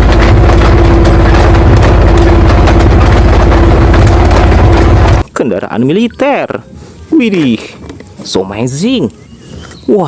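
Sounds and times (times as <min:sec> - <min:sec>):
tank engine idling: 0:00.0 - 0:05.2.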